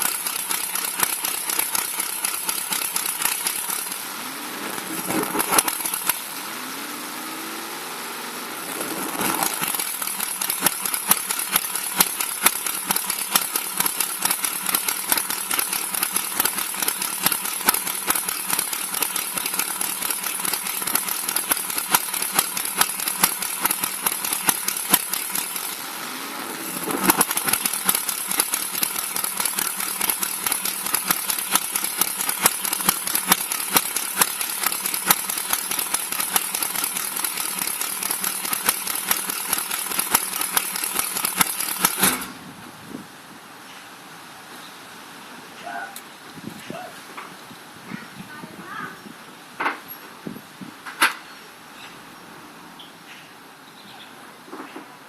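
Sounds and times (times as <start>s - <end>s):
engine exhaust crackling: 0.0s - 42.4s.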